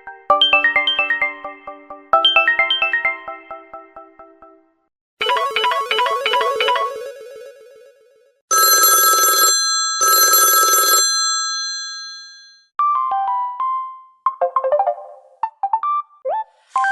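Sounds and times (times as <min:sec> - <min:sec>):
telephone bell ringtone: 0:05.2 - 0:07.9, 0:08.5 - 0:12.7.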